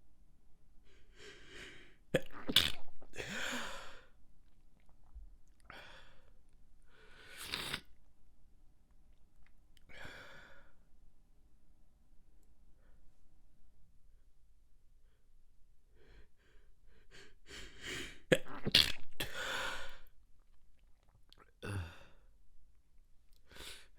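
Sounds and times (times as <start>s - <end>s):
person stifling sneezes: 2.2s - 3.8s, 18.3s - 19.6s.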